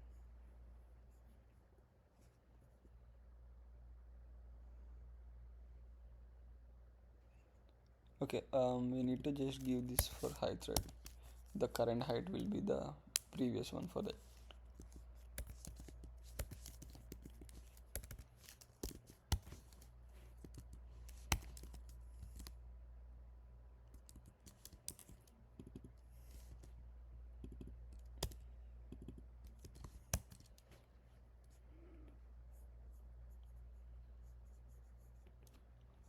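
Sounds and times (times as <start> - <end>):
steady low hum: 0.0 - 36.0
computer keyboard typing: 14.8 - 22.5.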